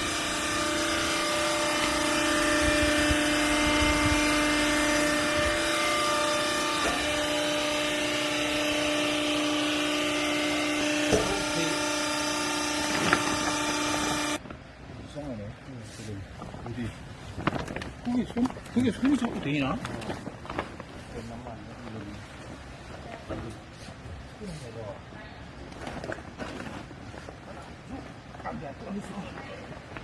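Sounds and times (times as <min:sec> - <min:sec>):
baler machine whine and hum: 0:00.0 - 0:14.4.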